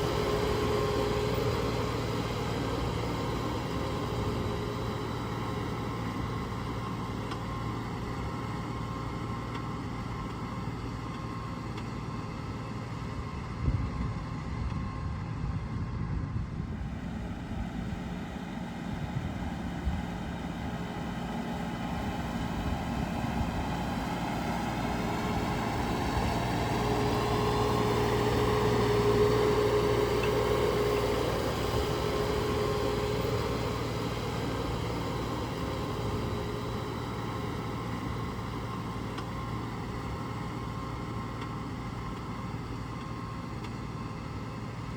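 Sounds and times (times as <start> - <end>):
tractor engine running: 0.0 - 44.9.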